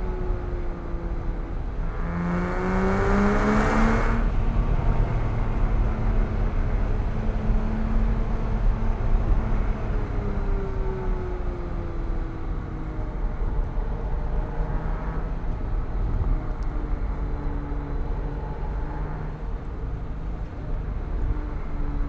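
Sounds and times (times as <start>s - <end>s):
road and tyre rumble: 0.0s - 22.0s
car engine accelerating: 1.3s - 12.7s.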